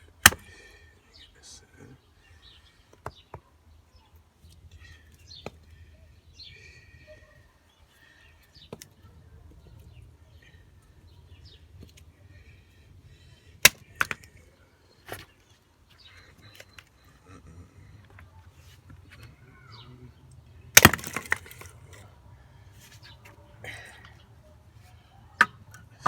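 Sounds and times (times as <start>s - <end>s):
faint birds chirping: 0.0s - 26.0s
axe chopping wood: 0.2s - 0.4s, 13.6s - 14.3s, 20.7s - 21.7s.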